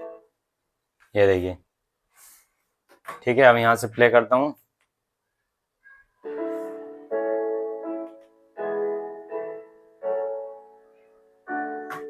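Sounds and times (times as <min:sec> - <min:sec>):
song with held chords from tv speakers: 0:00.0 - 0:00.6, 0:06.2 - 0:12.0.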